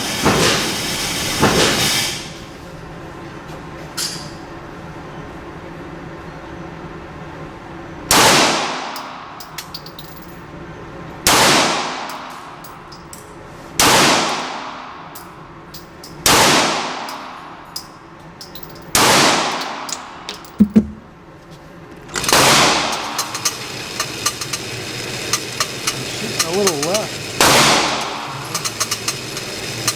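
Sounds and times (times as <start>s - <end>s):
small metallic clinks: 9.4s - 10.5s, 12.6s - 13.3s, 15.2s - 16.2s, 17.7s - 19.0s.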